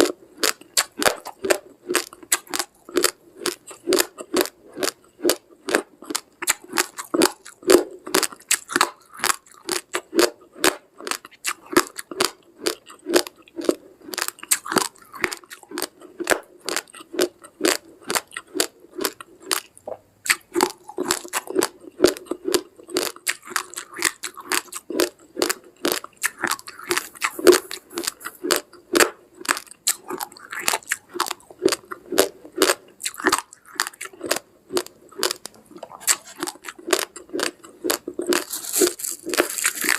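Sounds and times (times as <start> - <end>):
rice grains crunched between teeth: 36.0 - 39.9.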